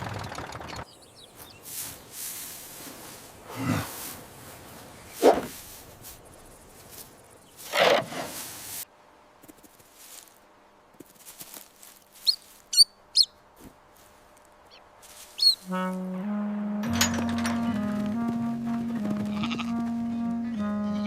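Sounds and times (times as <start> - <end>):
steady hiss: 1.6 - 7.6
small bird chirps: 12.2 - 13.4, 15.4 - 15.7.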